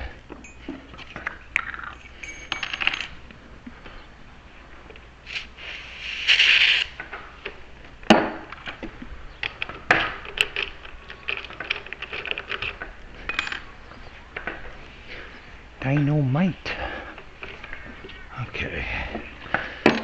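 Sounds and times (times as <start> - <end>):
metal keys clinking in locks: 1.9 - 3.2.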